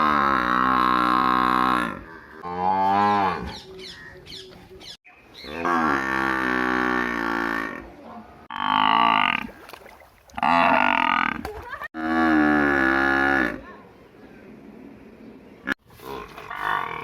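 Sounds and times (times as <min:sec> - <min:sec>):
buffalo mooing: 0:10.4 - 0:11.4.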